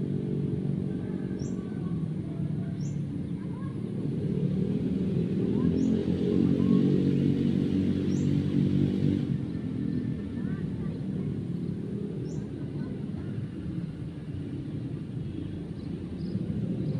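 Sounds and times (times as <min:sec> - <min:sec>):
birds chirping: 0:00.0 - 0:03.8, 0:04.8 - 0:16.9
engine running: 0:00.0 - 0:16.9.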